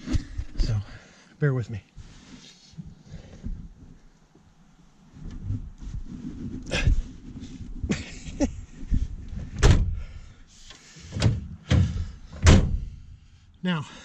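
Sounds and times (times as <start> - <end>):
scuffling and rustling: 2.0 - 9.6
knocks and thumps: 8.8 - 10.1, 11.1 - 12.9.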